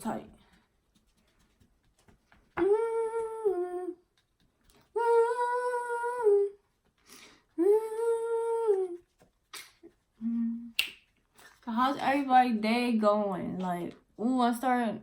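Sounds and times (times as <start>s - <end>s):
woman humming long notes: 7.6s - 9.0s, 10.2s - 10.8s.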